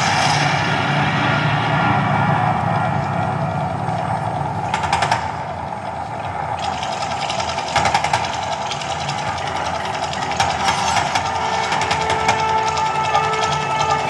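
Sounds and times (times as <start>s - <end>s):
rumble and roar over speakers: 0.0s - 14.0s
fast rattling bursts: 4.1s - 14.0s.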